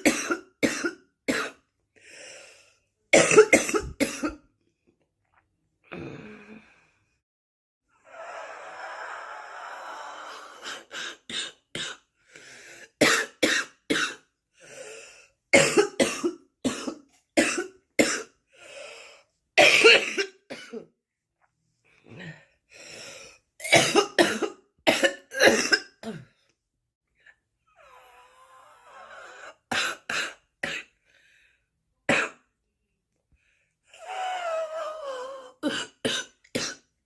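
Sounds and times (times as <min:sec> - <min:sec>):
person coughing: 0:00.0 - 0:01.6, 0:03.1 - 0:04.4, 0:15.6 - 0:18.3, 0:19.6 - 0:20.8, 0:23.6 - 0:26.3
long breath out: 0:08.0 - 0:11.0.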